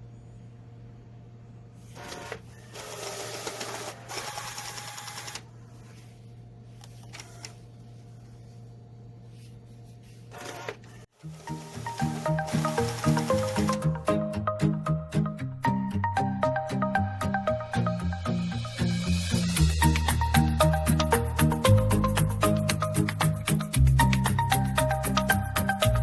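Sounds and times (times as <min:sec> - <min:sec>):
printer whirring and rattling: 0:02.0 - 0:05.5, 0:10.3 - 0:13.8.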